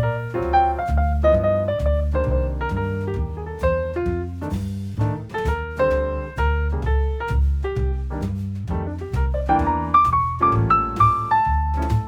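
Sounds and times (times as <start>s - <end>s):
low bass notes: 0.0s - 12.0s
relaxed jazz piano tune: 0.0s - 12.0s.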